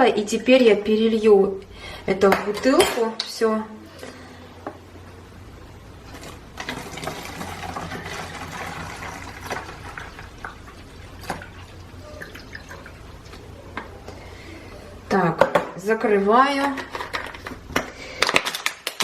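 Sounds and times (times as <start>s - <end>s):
liquid pouring into a bottle: 6.6s - 13.5s.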